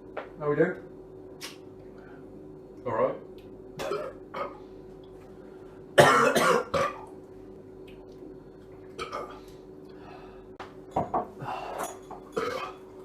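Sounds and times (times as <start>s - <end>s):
loud belch: 3.8s - 4.6s, 6.0s - 7.1s, 9.0s - 9.3s, 12.4s - 12.8s.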